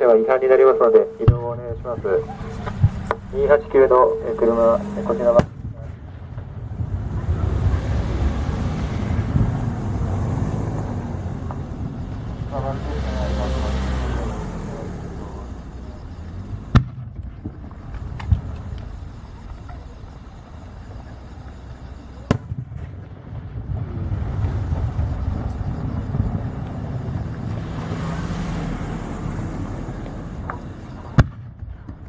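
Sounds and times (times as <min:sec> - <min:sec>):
fireworks bangs: 0:00.0 - 0:19.9
faint fireworks crackling: 0:00.0 - 0:32.0
low rumble: 0:06.1 - 0:13.2, 0:23.6 - 0:31.2.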